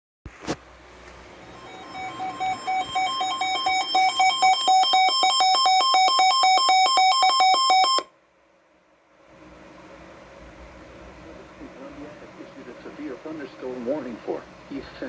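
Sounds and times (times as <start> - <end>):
alternating electronic alarm beeps: 1.5 - 8.1.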